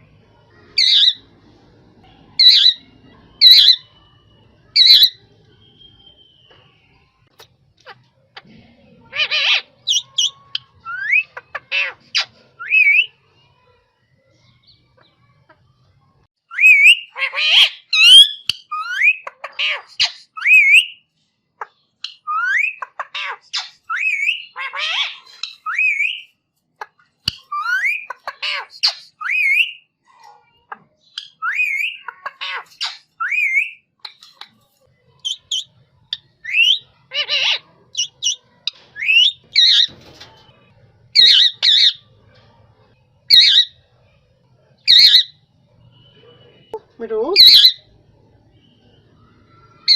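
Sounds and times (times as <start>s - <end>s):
parakeet squawking and whistling: 0.8s - 1.3s, 2.4s - 8.0s, 9.1s - 13.1s, 16.5s - 21.0s, 22.0s - 26.3s, 27.3s - 29.9s, 31.0s - 34.4s, 35.1s - 40.0s, 41.1s - 42.1s, 43.3s - 43.8s, 44.9s - 45.4s, 46.0s - 47.9s.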